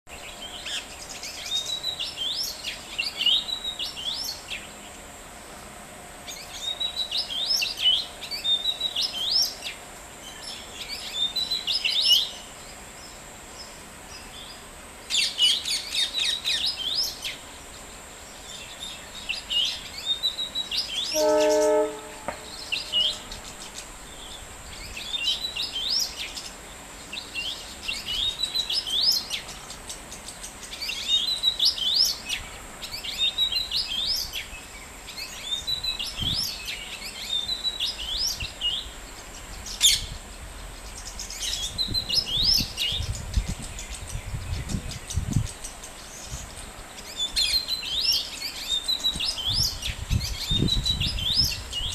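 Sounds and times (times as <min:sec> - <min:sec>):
small birds chirping: 0:00.1 - 0:51.9
loud horn-like tone: 0:21.0 - 0:23.4
steady thin high tone: 0:21.1 - 0:23.5.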